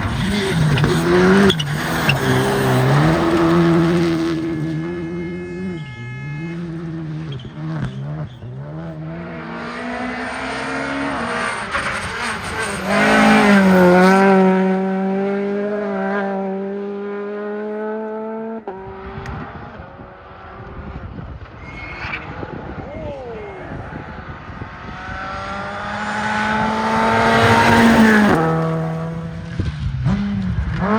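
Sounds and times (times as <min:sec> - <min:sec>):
rally car engine at high revs: 0:00.0 - 0:21.5, 0:23.9 - 0:30.9.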